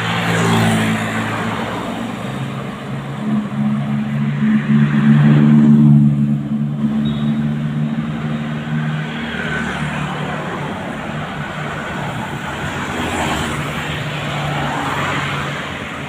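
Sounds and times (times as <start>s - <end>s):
vehicle engine passing by: 0.0s - 10.6s.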